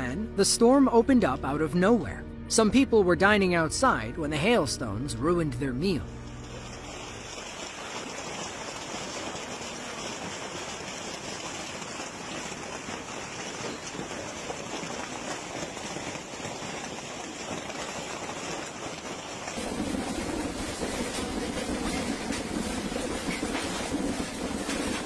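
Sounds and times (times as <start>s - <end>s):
loud low noise: 0.0s - 7.8s, 19.6s - 25.0s
hailstones striking hard surfaces: 6.1s - 25.0s.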